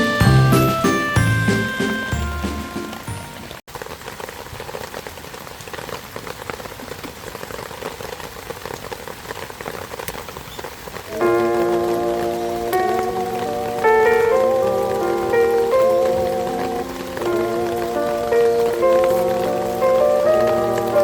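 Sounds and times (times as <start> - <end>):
background music: 0.0 - 3.5, 11.1 - 21.0
steady rain falling: 0.0 - 21.0.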